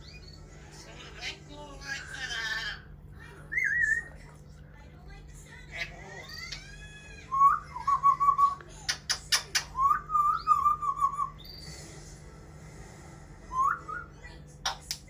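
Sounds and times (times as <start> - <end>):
parrot whistling: 3.5 - 4.1, 7.3 - 8.6, 9.8 - 11.6, 13.5 - 14.2.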